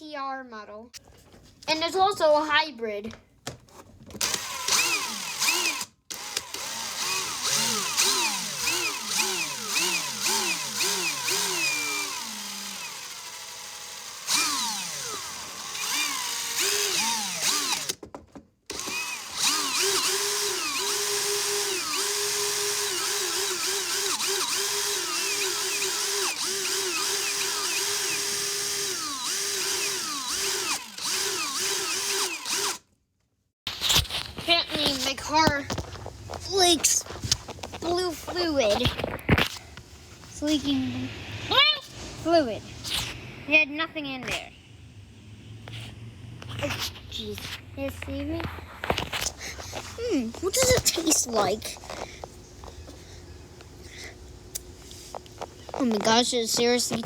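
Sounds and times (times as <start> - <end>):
cordless drill motor whining: 4.2 - 18.0, 18.7 - 32.8, 48.9 - 57.0.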